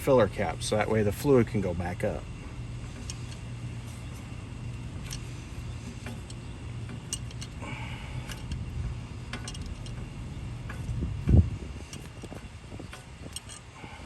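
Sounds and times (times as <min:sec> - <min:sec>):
steady low hum: 0:00.0 - 0:14.0
hand tools clicking: 0:11.8 - 0:13.7.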